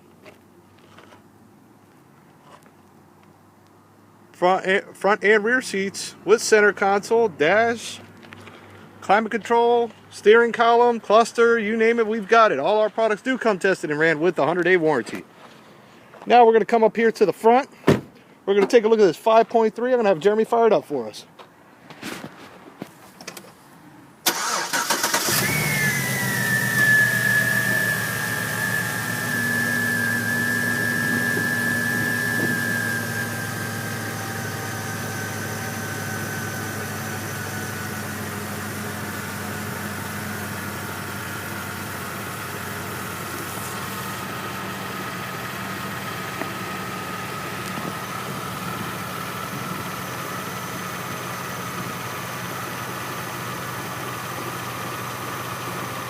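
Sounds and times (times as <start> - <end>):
car engine starting and idling: 24.2 - 56.0
high whine: 25.8 - 52.0.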